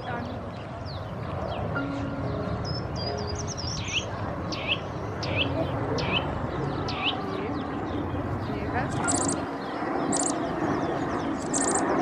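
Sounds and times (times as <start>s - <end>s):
bird calling: 8.9s - 9.4s, 10.1s - 10.4s, 11.3s - 11.9s.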